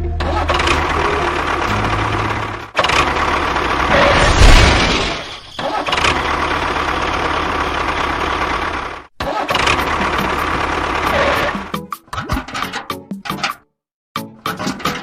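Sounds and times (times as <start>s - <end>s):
small vehicle motor running: 0.2s - 4.2s, 5.6s - 11.7s.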